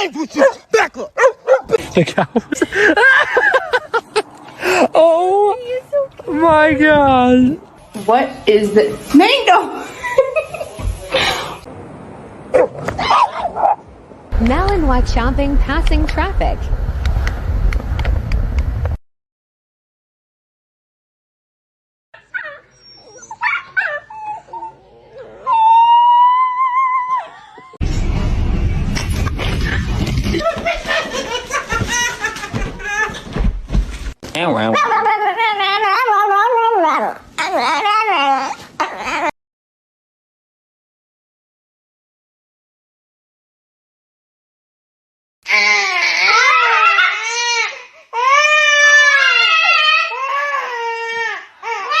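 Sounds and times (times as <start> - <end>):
dog whining: 22.2 - 27.8, 34.8 - 39.4
dog howling: 22.3 - 27.8, 48.8 - 50.5.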